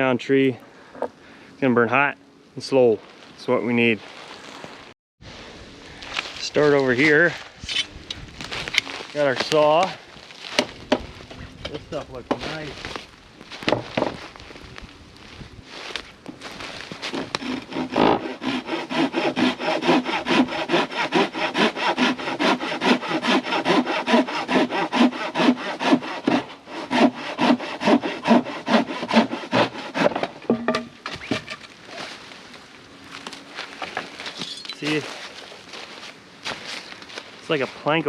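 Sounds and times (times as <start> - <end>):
hand saw cutting log: 17.0 - 31.5.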